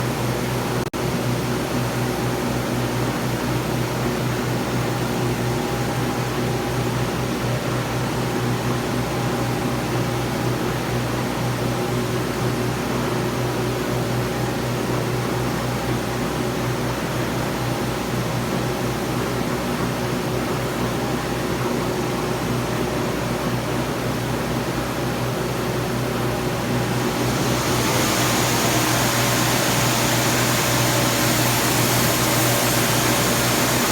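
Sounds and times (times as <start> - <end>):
sewing machine humming and whirring: 26.3 - 33.9.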